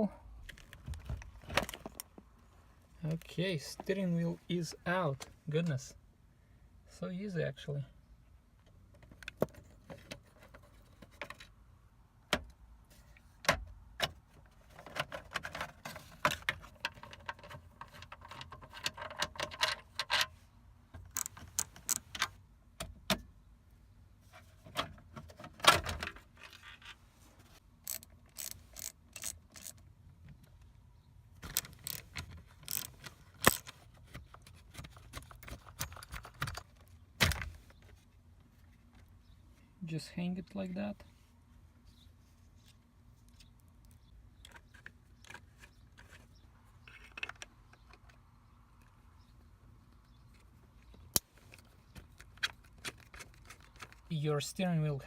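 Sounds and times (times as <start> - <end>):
tools clicking and clinking: 27.8 - 29.8, 31.4 - 33.7.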